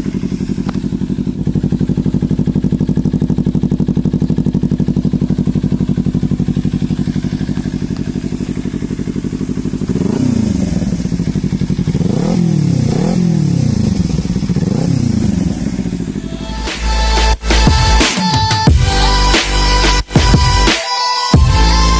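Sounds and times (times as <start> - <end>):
motorcycle engine idling: 0.0 - 18.0
motorcycle engine revving: 0.0 - 20.7.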